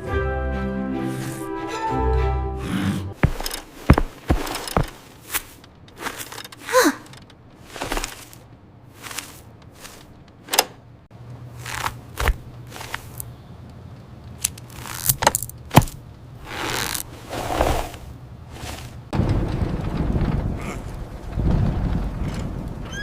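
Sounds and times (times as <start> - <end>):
short swishes: 3.3 - 6.5.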